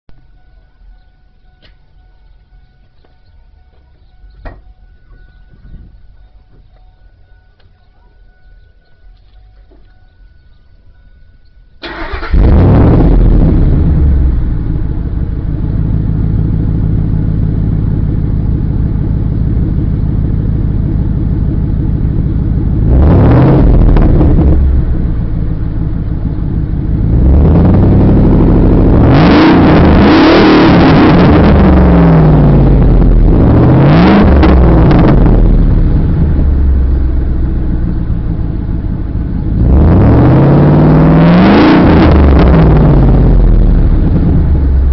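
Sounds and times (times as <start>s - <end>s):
engine revving: 11.8s - 44.9s
pickup truck engine idling: 13.4s - 29.1s, 31.4s - 40.7s.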